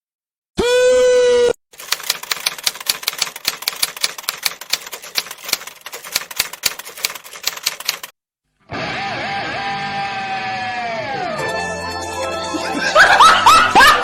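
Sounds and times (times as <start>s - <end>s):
rapid sharp clicks: 1.8s - 8.2s.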